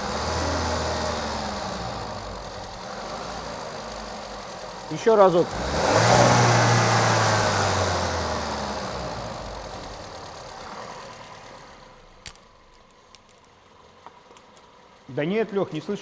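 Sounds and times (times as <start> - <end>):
car engine revs sinking to idle: 0.0 - 12.2.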